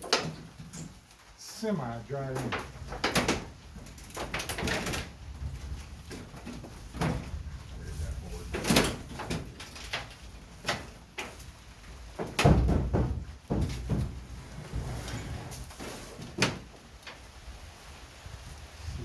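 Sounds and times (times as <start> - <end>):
building materials knocking: 0.0 - 0.6, 2.2 - 7.5, 12.0 - 16.8.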